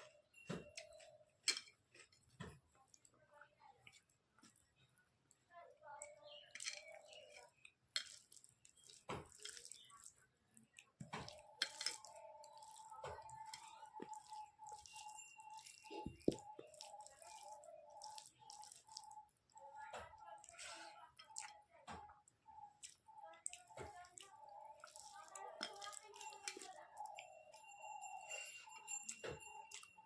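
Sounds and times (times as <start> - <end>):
wet chewing and lip smacking: 6.8 - 20.6, 21.2 - 27.3
faint steady tone: 11.2 - 30.0.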